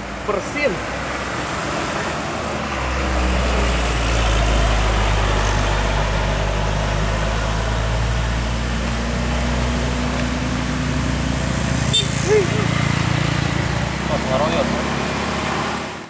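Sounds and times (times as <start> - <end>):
road noise: 0.0 - 16.0
heavy vehicle engine running: 1.9 - 16.0.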